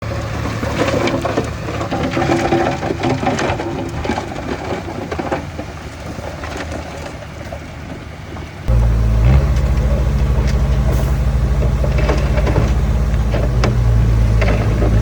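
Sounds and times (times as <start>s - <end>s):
diesel engine running: 8.7s - 15.0s
soil and stones clattering: 8.7s - 15.0s.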